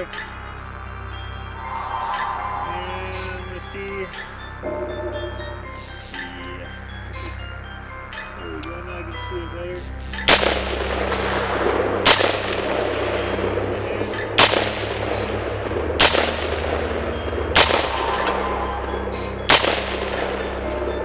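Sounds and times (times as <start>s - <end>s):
rifle shots echoing: 10.3s - 13.1s, 14.4s - 15.3s, 16.0s - 16.8s, 17.6s - 18.4s, 19.5s - 20.3s.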